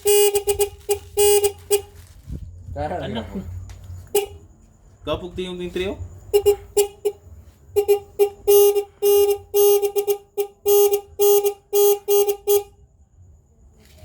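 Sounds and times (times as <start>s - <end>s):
electronic horn beeping: 0.0s - 1.9s, 4.1s - 4.5s, 6.3s - 12.8s.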